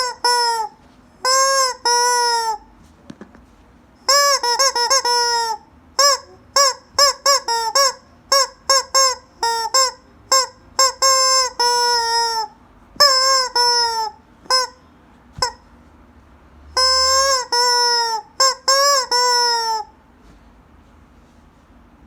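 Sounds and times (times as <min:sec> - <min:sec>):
rubber chicken toy squawking: 0:00.0 - 0:02.7, 0:04.0 - 0:15.6, 0:16.8 - 0:20.0.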